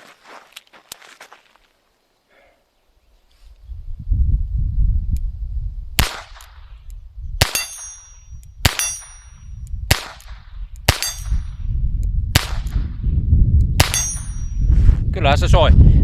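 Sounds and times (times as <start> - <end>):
steel plate ringing when hit: 7.5 - 9.4, 11.0 - 11.5, 13.9 - 14.6.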